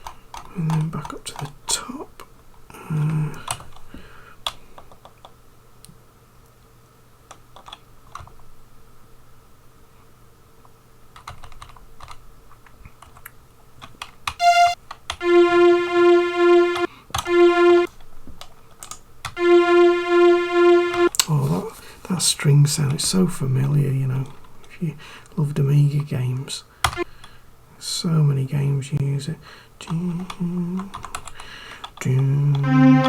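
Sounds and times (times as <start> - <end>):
string sample note: 14.4 - 17.9, 19.4 - 21.1, 32.6 - 33.0.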